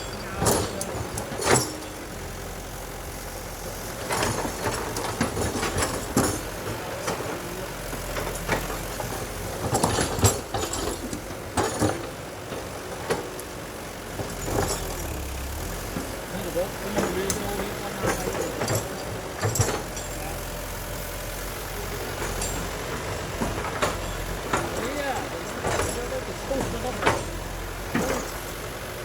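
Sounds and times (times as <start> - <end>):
diesel engine running: 0.0 - 29.0
sharp knocks and clatters: 8.0 - 13.3, 22.1 - 28.6.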